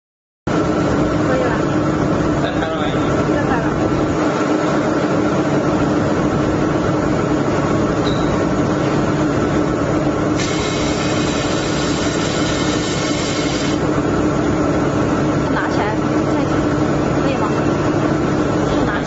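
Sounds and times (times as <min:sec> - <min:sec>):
laser welding machine humming: 0:09.1 - 0:15.6.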